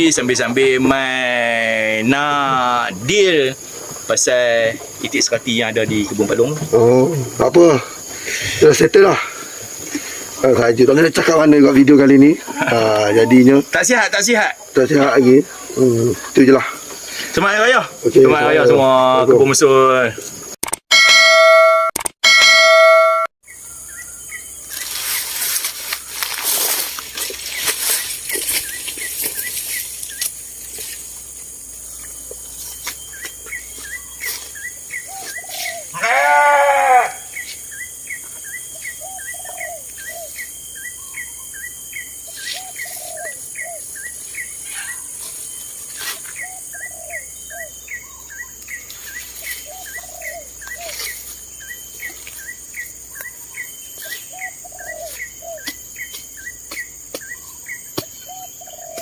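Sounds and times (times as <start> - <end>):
small birds chirping: 0.0 - 20.6, 23.4 - 59.0
sheep bleating: 35.9 - 37.3.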